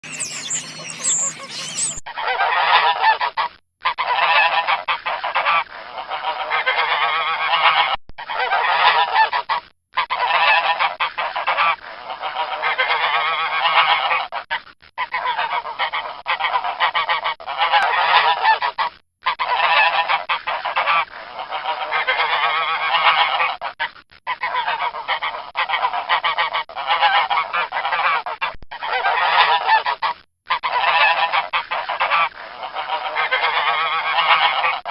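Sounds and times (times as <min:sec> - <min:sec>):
geese honking: 0:00.0 - 0:02.0.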